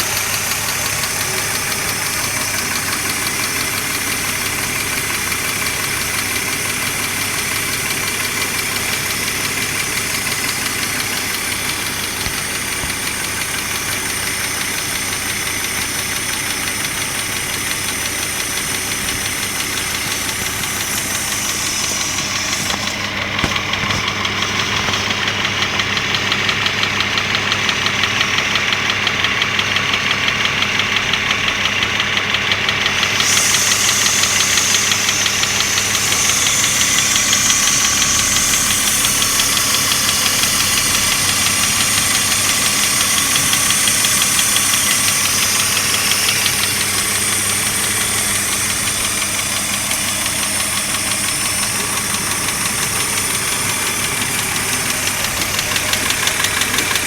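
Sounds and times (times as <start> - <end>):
engine running: 0.0 - 57.0.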